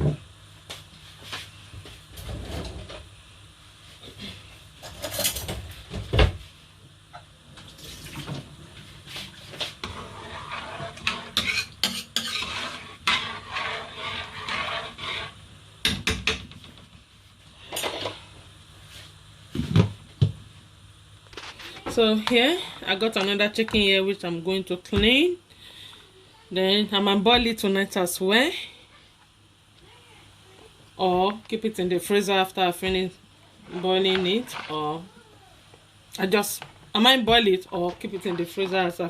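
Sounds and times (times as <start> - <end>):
pots and cutlery clattering: 4.8 - 5.6
scraping of kitchenware: 9.8 - 15.4.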